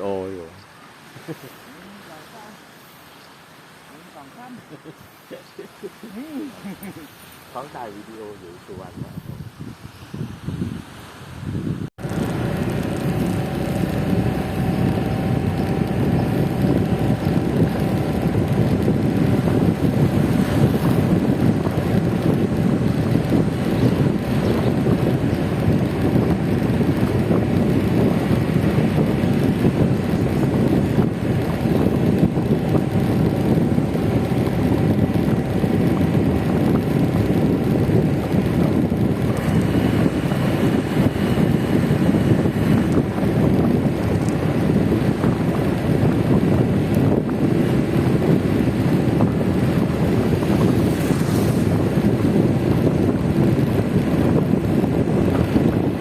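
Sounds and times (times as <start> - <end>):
wind buffeting microphone: 6.0 - 56.0
scooter vehicle noise: 12.0 - 56.0.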